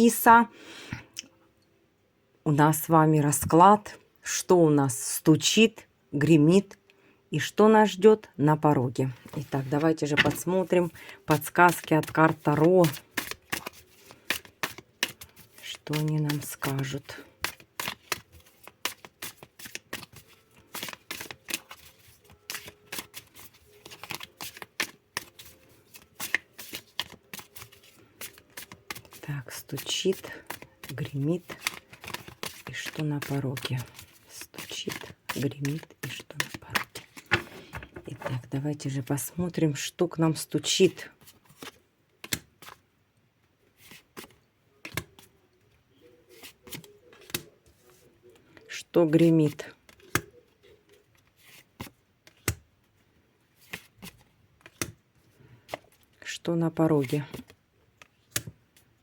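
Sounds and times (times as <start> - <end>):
cards being shuffled: 9.1 - 38.5, 41.2 - 42.8, 43.8 - 45.3, 46.3 - 48.1, 49.1 - 52.6, 53.6 - 55.0, 56.9 - 58.6.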